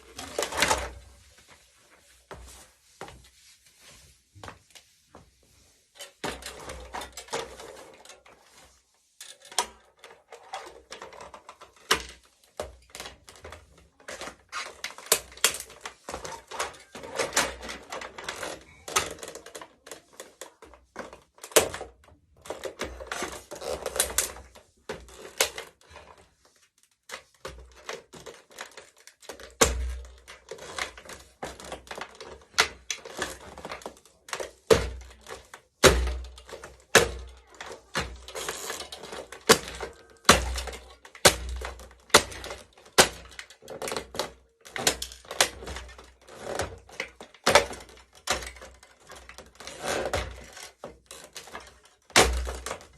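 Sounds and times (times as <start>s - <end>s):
plastic toy car cracking: 9.3s - 25.8s, 27.1s - 52.9s.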